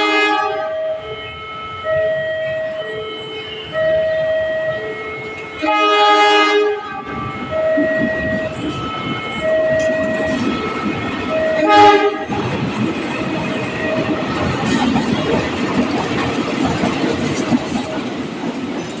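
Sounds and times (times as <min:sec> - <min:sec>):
diesel locomotive horn blasts: 0:00.0 - 0:12.6
level crossing alarm: 0:00.1 - 0:14.7
train wheels clattering on rails: 0:07.1 - 0:19.0.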